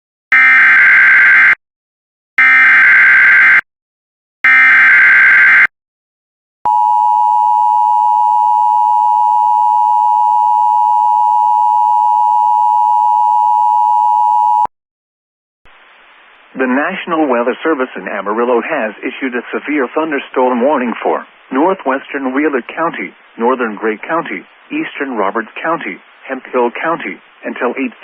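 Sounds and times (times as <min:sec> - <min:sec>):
two-tone attention signal: 0:06.7 - 0:14.7.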